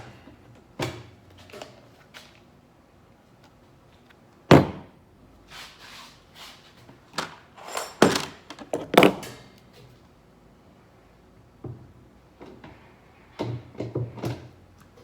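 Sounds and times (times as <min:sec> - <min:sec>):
short scrapes: 0:05.5 - 0:06.8.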